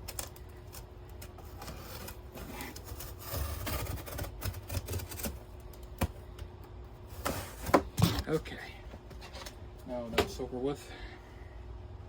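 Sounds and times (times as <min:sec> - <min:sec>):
blade cutting cardboard: 0:00.7 - 0:05.4.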